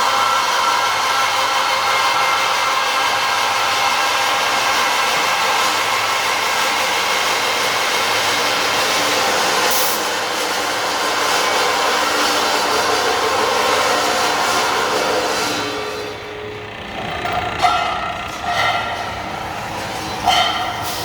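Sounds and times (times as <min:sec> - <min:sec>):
machinery hissing: 0:00.0 - 0:21.0
machinery whining tones: 0:00.0 - 0:21.0.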